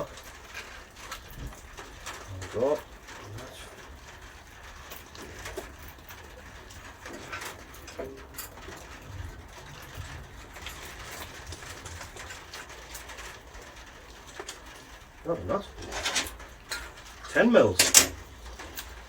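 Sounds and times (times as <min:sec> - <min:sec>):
pigeon cooing: 0:00.0 - 0:17.8
spanner clicking on bolts: 0:17.7 - 0:19.0.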